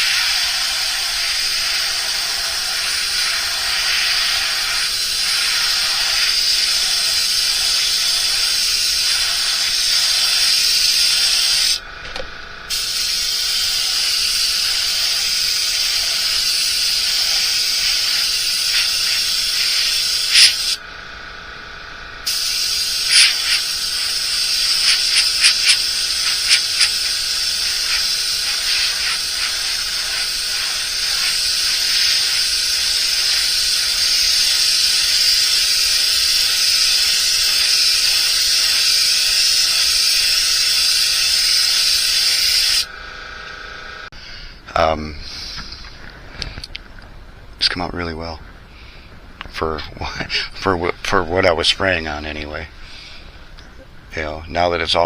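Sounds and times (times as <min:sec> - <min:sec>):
paint spraying hiss: 0:00.0 - 0:11.8, 0:12.7 - 0:20.8, 0:22.2 - 0:42.9.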